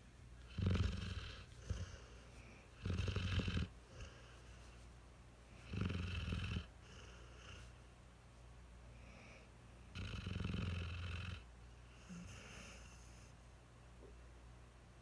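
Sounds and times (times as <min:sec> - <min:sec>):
puppy snoring: 0:00.5 - 0:02.2, 0:02.8 - 0:04.3, 0:05.6 - 0:07.7, 0:09.9 - 0:13.2
puppy soft breaths: 0:00.7 - 0:05.7, 0:11.8 - 0:13.5.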